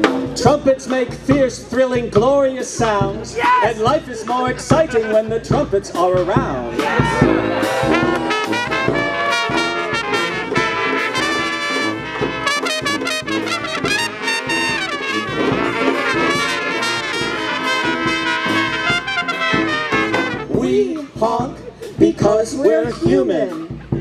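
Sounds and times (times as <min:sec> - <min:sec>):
brass band playing: 0:00.0 - 0:01.2, 0:06.2 - 0:21.4
steady low beat: 0:04.6 - 0:22.4.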